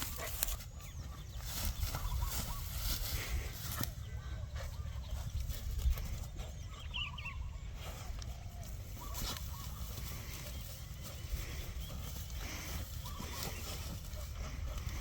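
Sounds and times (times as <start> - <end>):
bird wavering calls: 0.0 - 3.0, 8.4 - 14.2.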